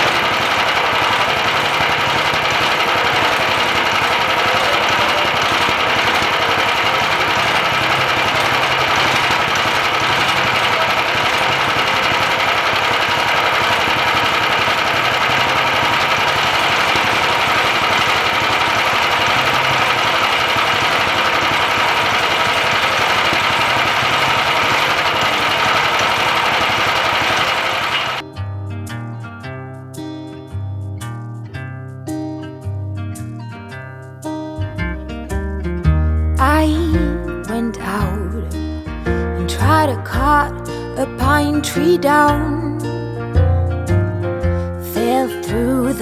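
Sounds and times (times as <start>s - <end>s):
band sawmill cutting log: 0.0s - 28.2s.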